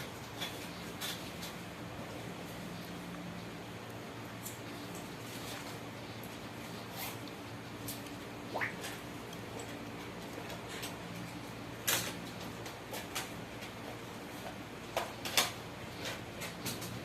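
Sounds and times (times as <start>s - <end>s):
sharp clicks and light knocks: 8.8s - 17.0s.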